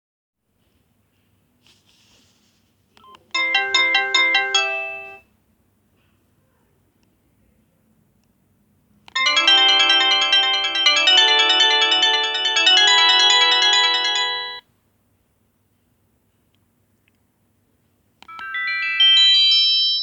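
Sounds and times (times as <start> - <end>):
phone ringtone chiming melody: 3.4 - 5.2, 9.2 - 14.6, 18.3 - 20.0.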